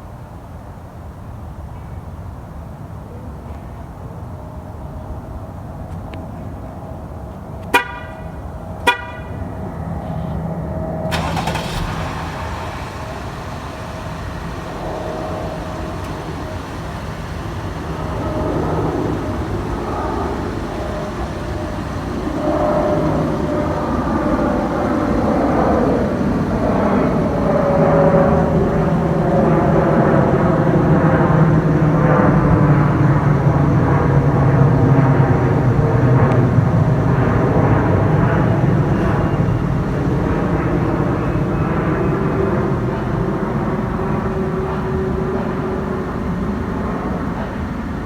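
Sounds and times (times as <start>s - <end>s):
vehicle horn toots: 7.7s - 9.4s
engine rushing: 9.6s - 48.0s.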